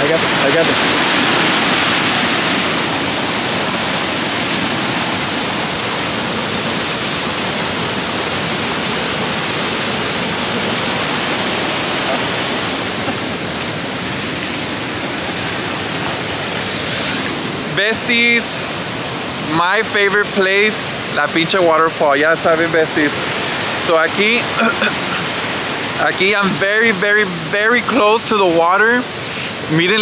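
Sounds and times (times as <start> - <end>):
waterfall rushing: 0.0 - 30.0.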